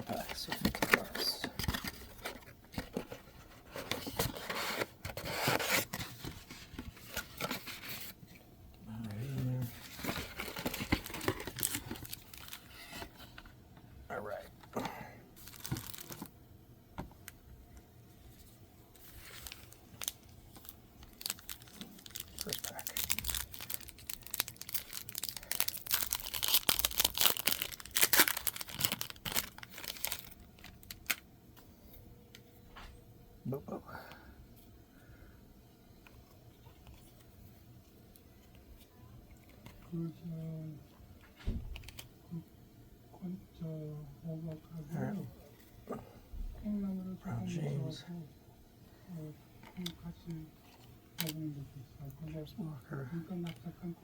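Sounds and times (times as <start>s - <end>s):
card box being handled and opened: 0.1s - 8.2s
wrapper crinkling and tearing: 9.7s - 13.1s, 15.4s - 16.3s, 19.0s - 31.2s.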